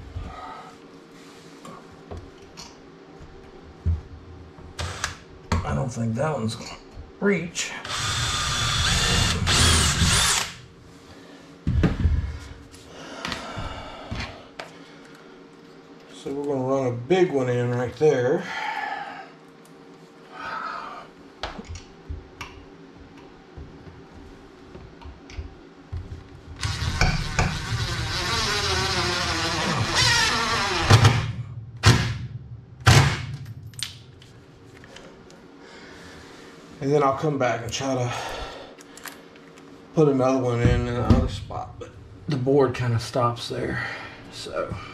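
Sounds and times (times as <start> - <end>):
power drill: 4.8 - 5.2, 7.9 - 10.6, 26.6 - 32.1.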